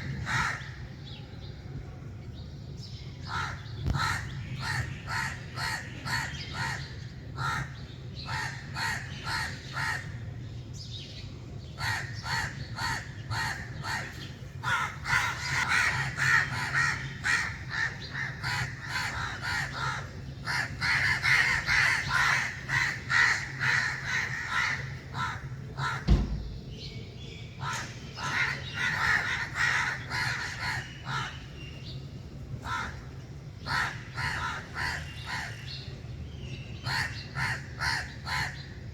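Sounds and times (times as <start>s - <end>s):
crows cawing: 0.0s - 0.9s, 3.3s - 10.2s, 11.8s - 26.2s, 27.6s - 31.5s, 32.6s - 35.6s, 36.8s - 38.7s
low thump: 26.0s - 26.8s.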